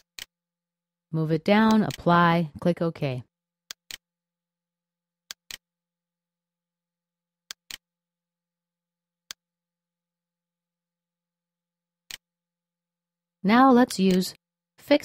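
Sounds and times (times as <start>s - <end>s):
computer mouse clicks: 1.6s - 2.1s, 7.5s - 7.8s.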